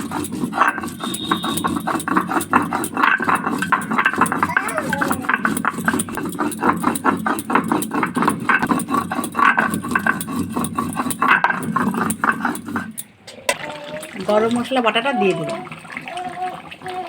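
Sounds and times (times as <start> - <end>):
spices ground by hand: 0.0 - 13.1.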